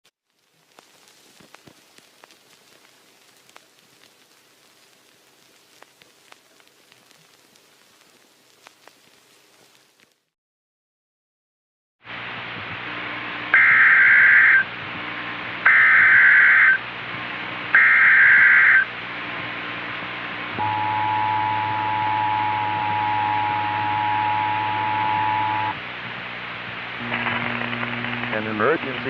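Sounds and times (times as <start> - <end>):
low hum: 12.1 - 29.0
radio static: 12.1 - 29.0
screeching data tones: 13.5 - 14.7, 15.6 - 16.8, 17.7 - 18.9, 20.6 - 25.8
two-tone attention signal: 20.6 - 25.8.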